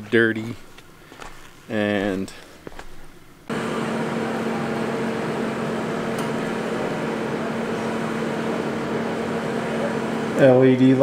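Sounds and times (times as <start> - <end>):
mechanical hum: 0.0 - 11.0.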